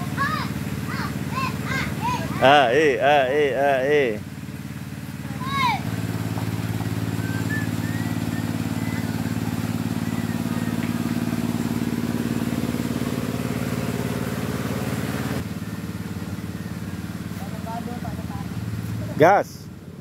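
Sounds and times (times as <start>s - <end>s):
small engine humming: 0.0s - 20.0s
thin high chirps: 5.9s - 14.1s.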